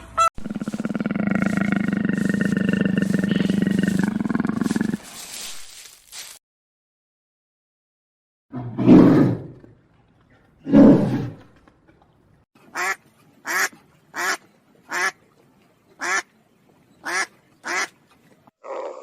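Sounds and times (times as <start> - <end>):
low rough animal call: 0.4 - 5.5.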